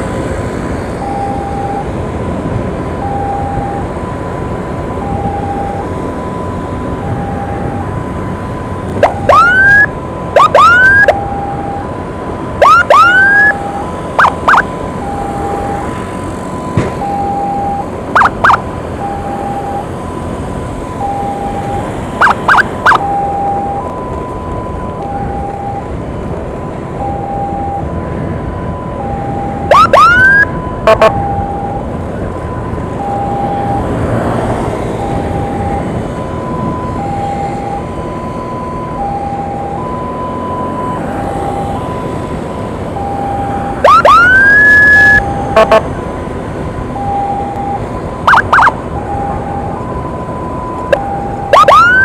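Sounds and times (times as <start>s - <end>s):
ambulance siren hi-lo: 0.0s - 52.0s
traffic noise: 0.0s - 52.0s
loud siren whoop: 4.9s - 19.9s, 21.0s - 26.0s, 27.0s - 46.0s, 46.9s - 52.0s
short sharp siren blasts: 9.0s - 11.8s, 12.6s - 15.8s, 17.0s - 19.8s, 21.0s - 23.9s, 29.0s - 31.8s, 43.0s - 45.9s, 47.0s - 49.8s, 50.7s - 52.0s.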